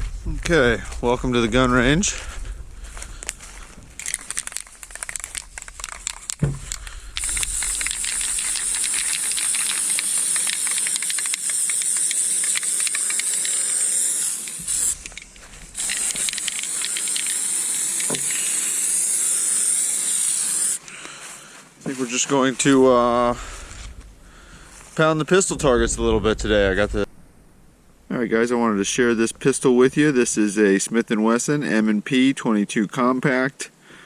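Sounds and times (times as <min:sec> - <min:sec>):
high-pitched hiss: 0:00.5 - 0:30.8
rattling clicks: 0:04.0 - 0:17.4.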